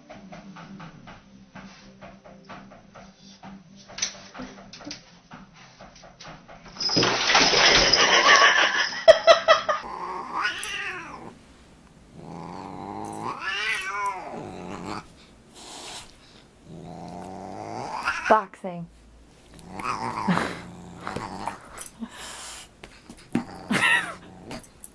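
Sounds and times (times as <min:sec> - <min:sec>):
cat yowling: 0:09.8 - 0:11.4, 0:12.2 - 0:16.1, 0:16.7 - 0:18.4, 0:19.6 - 0:21.9, 0:23.4 - 0:24.6.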